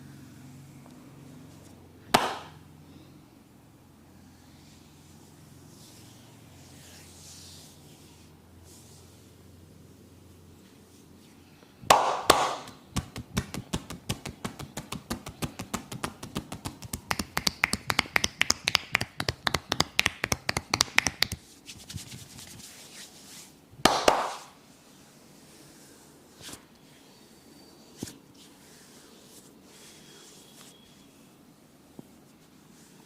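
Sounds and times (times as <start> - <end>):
hands slapping in massage: 2.1 - 2.6, 11.8 - 22.7, 23.8 - 24.6.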